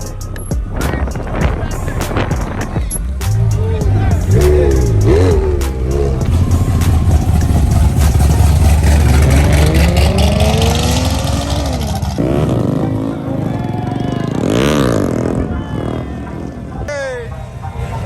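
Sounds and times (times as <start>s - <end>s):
car engines revving: 0.0s - 18.0s.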